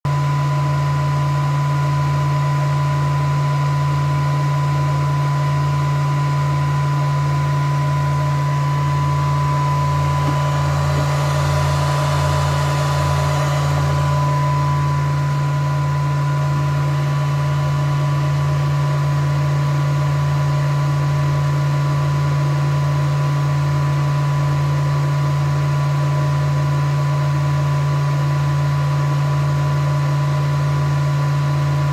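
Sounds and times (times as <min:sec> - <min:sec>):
machine droning: 0:00.1 - 0:31.9
thin high tone: 0:08.4 - 0:18.1.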